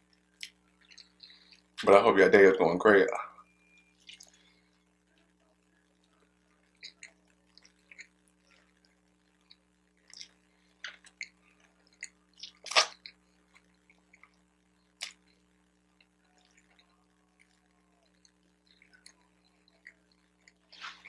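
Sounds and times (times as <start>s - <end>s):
close chewing with mouth clicks: 0.0s - 1.8s, 4.0s - 4.8s, 6.1s - 21.0s
faint steady hum: 0.0s - 21.0s.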